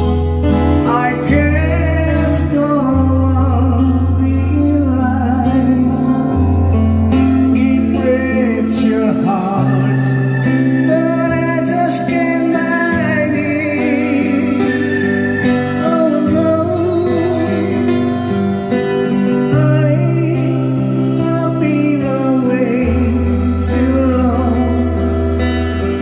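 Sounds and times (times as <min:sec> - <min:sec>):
held bass notes: 0:00.0 - 0:26.0
wavering melody with vibrato: 0:00.0 - 0:26.0.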